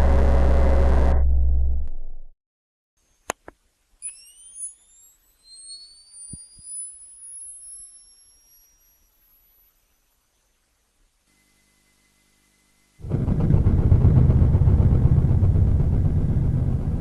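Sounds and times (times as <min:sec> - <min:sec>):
high-pitched electronic whine: 0:00.0 - 0:01.8, 0:04.0 - 0:17.0
click: 0:06.3 - 0:06.7
short low thumps: 0:13.0 - 0:17.0.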